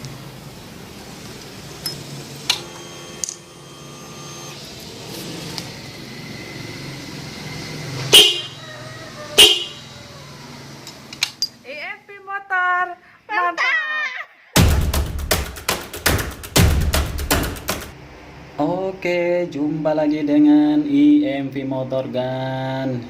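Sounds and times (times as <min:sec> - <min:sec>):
motorcycle horn toots: 0:08.0 - 0:08.6, 0:09.3 - 0:10.0.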